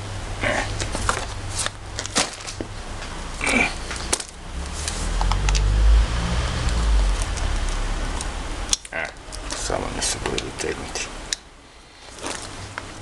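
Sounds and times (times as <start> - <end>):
plastic rustling: 0.7 - 5.7, 11.9 - 13.0
low rumble: 4.4 - 9.6.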